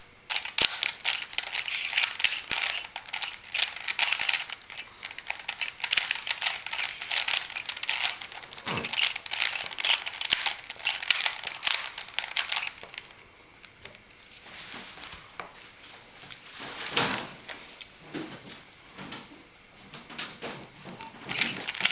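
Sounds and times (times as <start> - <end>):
puzzle cube clicking: 0.3 - 13.0.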